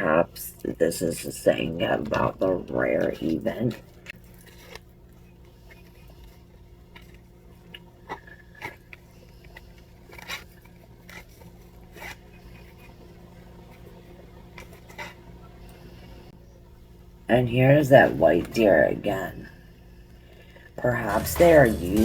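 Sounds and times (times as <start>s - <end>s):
low electrical hum: 0.0s - 22.0s
soft clicks and paper rustles: 1.9s - 16.3s
cards shuffling: 21.0s - 22.0s.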